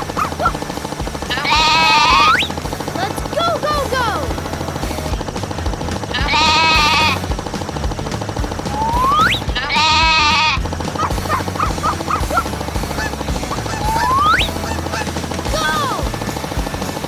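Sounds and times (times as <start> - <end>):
background music with steady beat: 0.0 - 17.0
rising whistle-like glide: 8.7 - 9.5.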